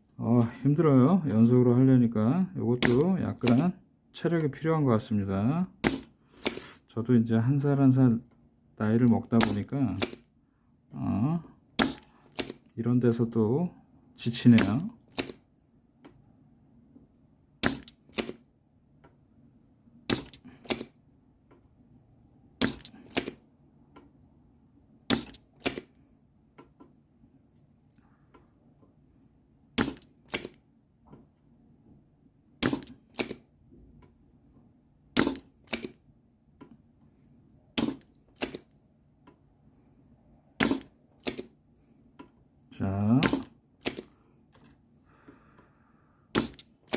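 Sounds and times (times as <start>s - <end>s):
desoldering pump plastic snaps: 2.8s - 3.7s, 35.2s - 36.0s.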